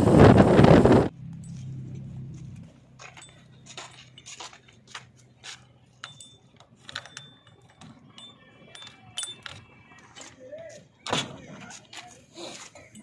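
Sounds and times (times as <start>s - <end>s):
mechanical clicks and clinks: 6.0s - 10.3s.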